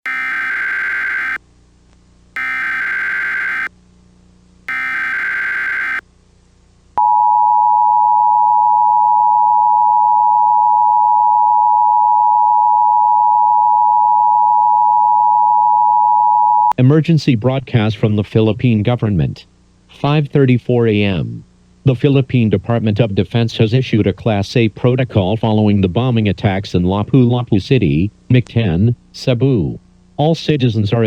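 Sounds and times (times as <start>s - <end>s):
harsh digital data bursts: 0.0s - 1.4s, 2.4s - 3.7s, 4.7s - 6.0s
two-tone attention signal: 0.0s - 1.4s, 2.4s - 3.7s, 4.7s - 6.0s.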